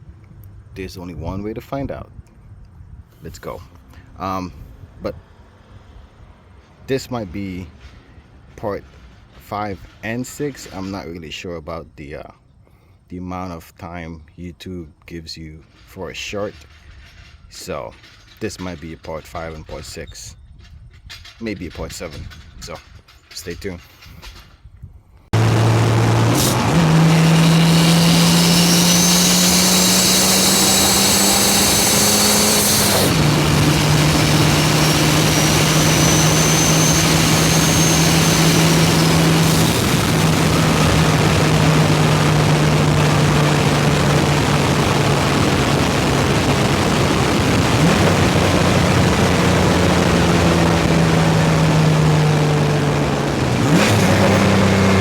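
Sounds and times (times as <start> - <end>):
car engine pulling hard: 25.3 - 55.0
turbo whistle: 26.0 - 41.4.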